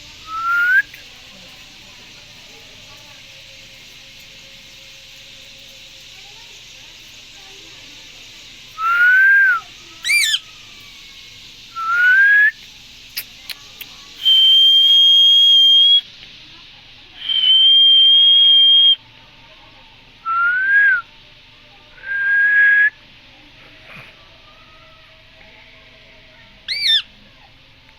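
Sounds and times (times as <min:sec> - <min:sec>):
parrot whistling: 0:00.2 - 0:01.0, 0:08.8 - 0:10.6, 0:11.7 - 0:12.6, 0:14.2 - 0:16.0, 0:17.2 - 0:19.0, 0:26.7 - 0:27.1.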